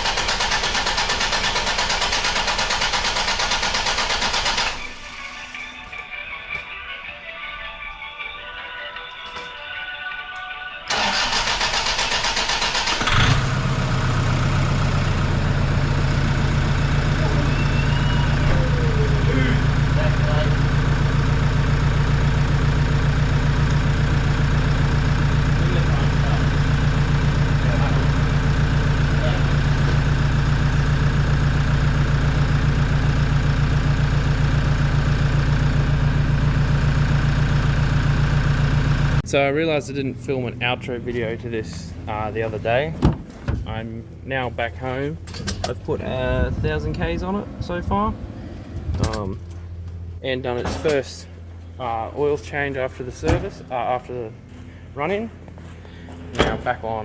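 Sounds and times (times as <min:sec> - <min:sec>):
starter cranking engine: 0:00.0 - 0:05.1, 0:10.9 - 0:34.4
diesel engine idling: 0:00.0 - 0:06.4, 0:10.9 - 0:57.0.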